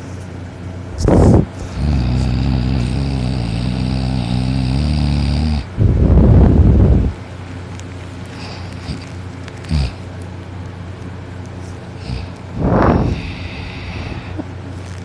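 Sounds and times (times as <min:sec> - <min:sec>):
noisy breathing: 0:01.0 - 0:07.1, 0:08.2 - 0:10.1, 0:11.6 - 0:15.0
person snoring loudly: 0:01.3 - 0:07.1, 0:09.7 - 0:10.0, 0:12.0 - 0:14.4.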